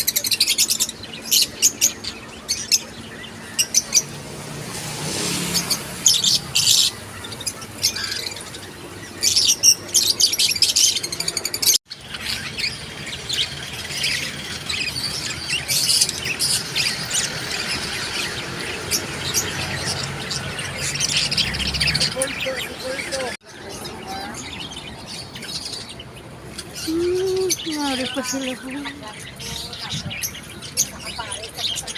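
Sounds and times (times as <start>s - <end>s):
birds chirping and squawking: 0.0s - 31.9s.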